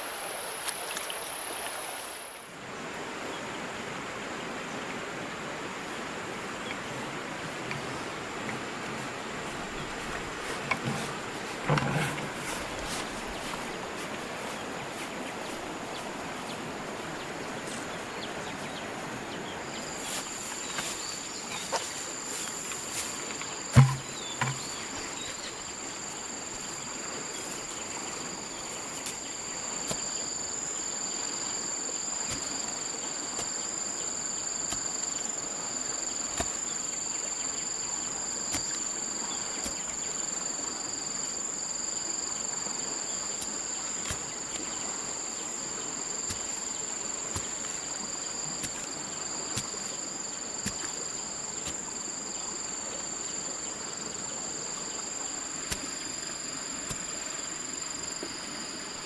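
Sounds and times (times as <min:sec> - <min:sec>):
faint outdoor hiss: 0:00.0 - 0:59.0
high-pitched insect trill: 0:19.8 - 0:59.0
sharp knock with dull thud: 0:23.7 - 0:24.8.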